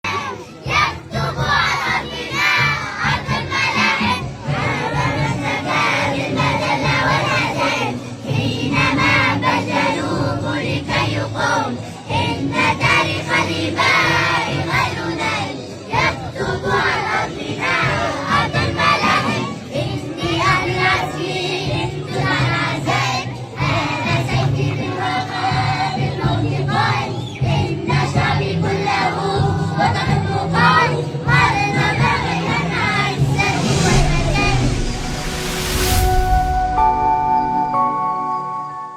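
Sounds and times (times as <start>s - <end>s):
children singing together: 0.0s - 34.8s
musical accompaniment: 29.9s - 38.9s.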